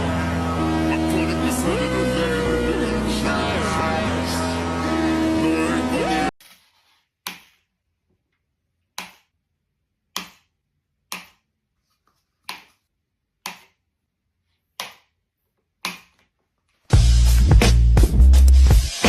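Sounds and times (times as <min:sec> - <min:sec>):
loud bass-heavy music: 0:00.0 - 0:06.3, 0:16.9 - 0:19.0.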